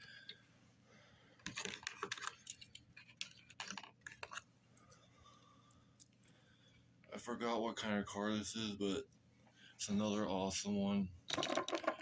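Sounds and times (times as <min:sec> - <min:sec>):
toy cars and packaging clattering: 0:01.4 - 0:04.4, 0:11.3 - 0:12.0.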